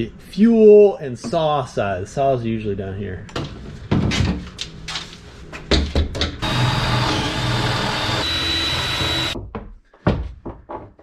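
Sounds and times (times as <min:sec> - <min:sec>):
power drill running: 0:06.4 - 0:09.4.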